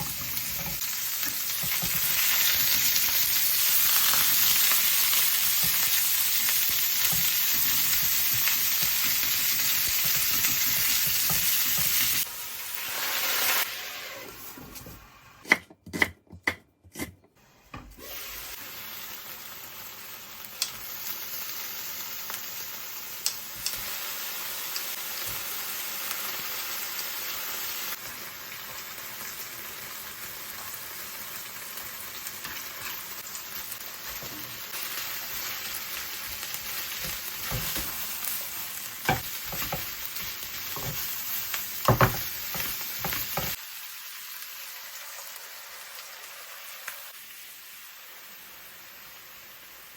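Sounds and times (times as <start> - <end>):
chicken sizzling in frying pan: 0.0 - 14.2, 18.0 - 49.9
utensil tapping pan: 39.1 - 41.1, 41.8 - 43.6.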